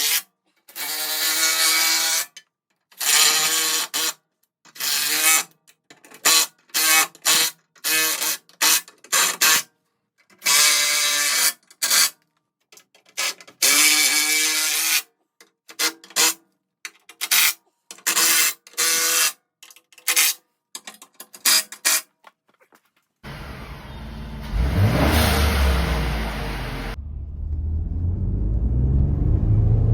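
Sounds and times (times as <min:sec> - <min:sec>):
truck engine rumbling: 0:23.2 - 0:29.9.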